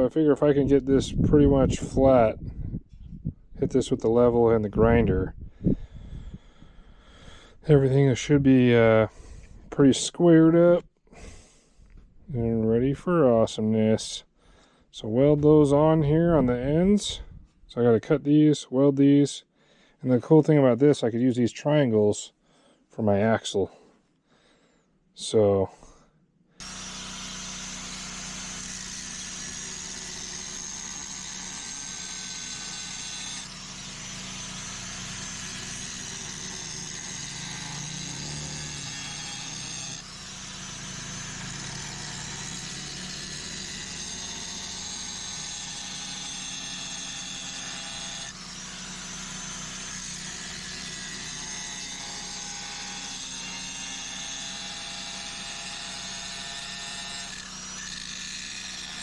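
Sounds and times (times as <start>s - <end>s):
angle grinder cutting steel: 26.6s - 59.0s.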